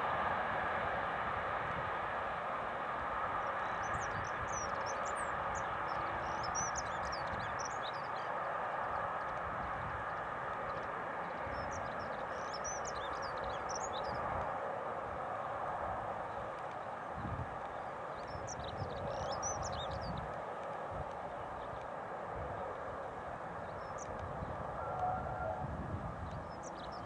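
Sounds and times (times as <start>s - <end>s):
small birds chirping: 3.5s - 14.5s, 16.3s - 22.0s.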